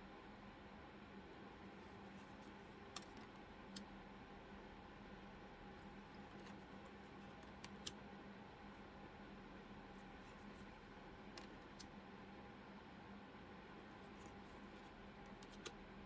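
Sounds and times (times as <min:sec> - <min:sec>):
faint steady hum: 0:00.0 - 0:16.0
cards flipping clicks: 0:15.3 - 0:15.8.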